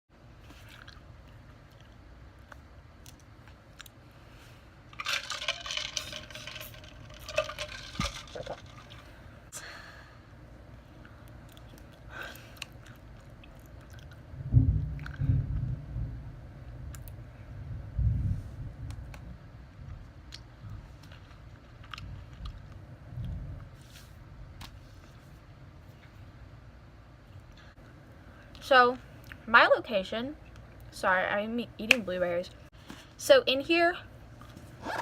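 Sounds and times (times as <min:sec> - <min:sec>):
woman chewing crunchily: 0:11.0 - 0:14.3.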